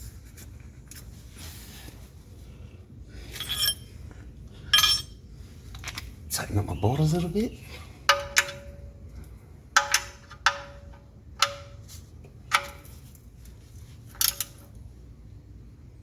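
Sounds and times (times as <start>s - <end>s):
wrench clinking on bolt: 3.3s - 3.9s, 4.8s - 5.2s, 8.1s - 8.8s, 9.8s - 11.9s, 12.5s - 13.1s, 14.1s - 14.8s.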